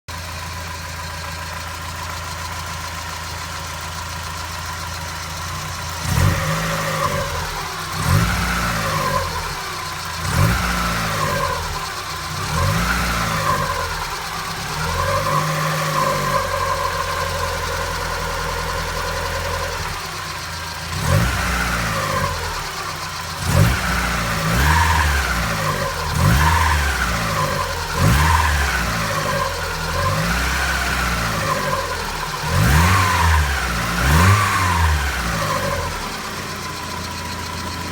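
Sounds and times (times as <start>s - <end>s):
car engine idling and revving: 0.0s - 37.9s.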